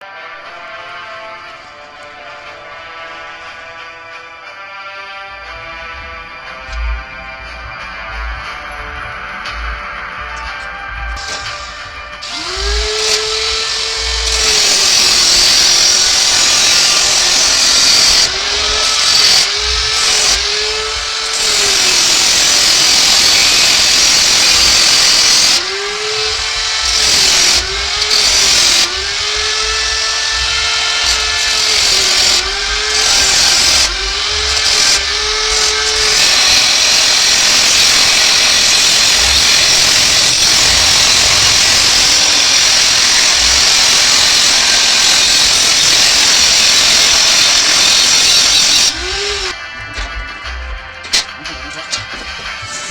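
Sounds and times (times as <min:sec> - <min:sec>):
power drill motor spinning: 0:09.7 - 0:49.7.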